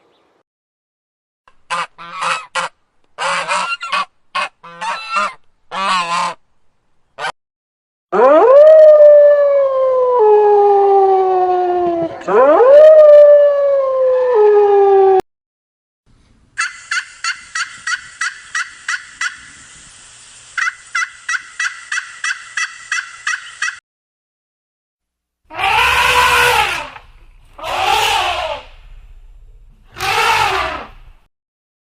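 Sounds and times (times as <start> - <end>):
long drawn-out animal cries: 25.5 - 27.0, 27.6 - 28.8, 30.0 - 31.0
pitched animal call: 25.5 - 28.8, 29.9 - 31.0.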